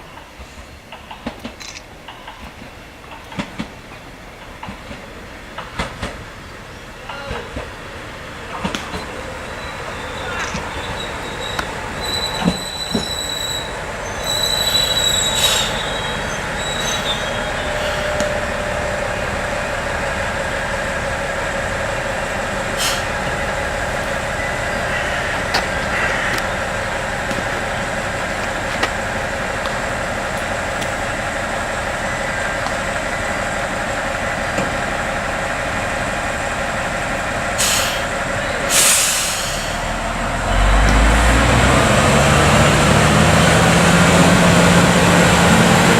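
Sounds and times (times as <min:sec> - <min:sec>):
high squeal of wheels: 0:09.5 - 0:18.3
diesel engine running: 0:17.6 - 0:45.9
short hisses: 0:22.8 - 0:23.1, 0:38.7 - 0:39.8.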